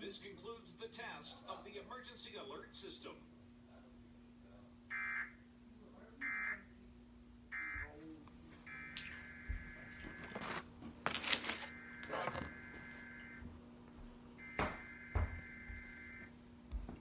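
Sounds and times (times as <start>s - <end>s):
sharp clicks and rustles: 10.1s - 12.6s.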